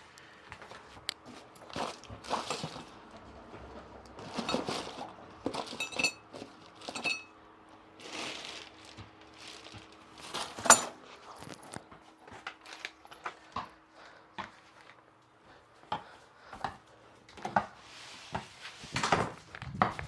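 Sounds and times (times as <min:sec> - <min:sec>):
small metal objects clinking: 0:04.3 - 0:07.3, 0:09.6 - 0:11.6.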